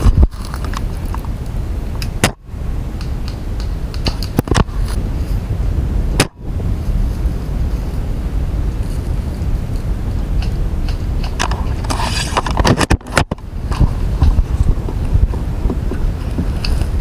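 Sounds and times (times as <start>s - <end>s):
low rumble: 0.0s - 12.7s, 13.4s - 17.0s
airsoft rifle shot crack: 6.2s - 6.4s.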